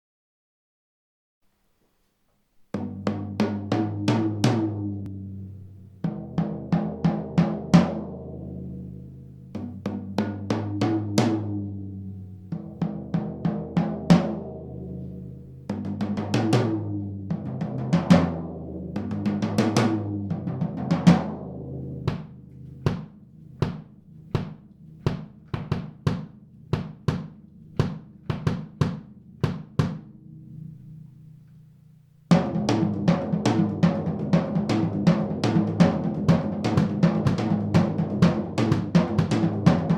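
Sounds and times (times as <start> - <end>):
drum fills on snare and toms: 2.7 - 5.0, 6.1 - 8.2, 9.6 - 11.6, 12.6 - 14.5, 15.7 - 30.1, 32.3 - 39.9
bass drum: 2.7 - 30.9, 32.3 - 39.9
evenly spaced drum strokes: 32.3 - 39.9.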